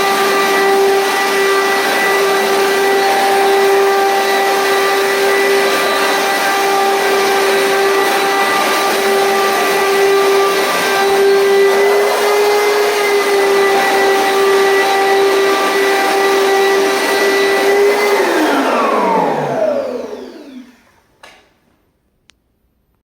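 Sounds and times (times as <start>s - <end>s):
vacuum cleaner whine: 0.0s - 21.7s
click: 21.2s - 21.5s, 22.2s - 22.4s.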